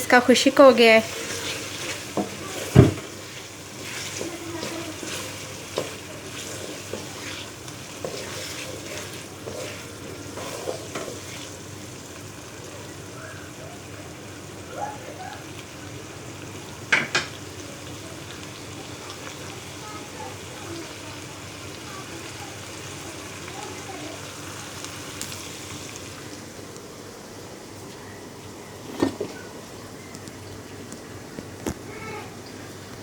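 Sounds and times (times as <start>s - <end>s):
oil sizzling: 0.0s - 33.0s
spoon stirring and scraping pot: 1.0s - 11.6s.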